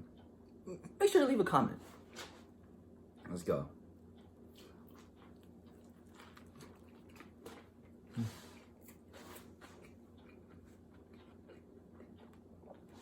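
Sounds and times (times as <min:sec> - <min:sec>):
chewing burger: 0:04.1 - 0:13.0.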